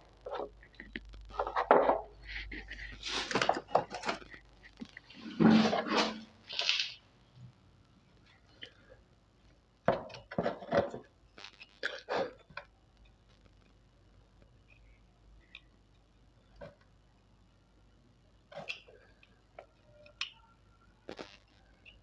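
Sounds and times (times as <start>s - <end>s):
scrape and rustle: 1.3s - 7.0s.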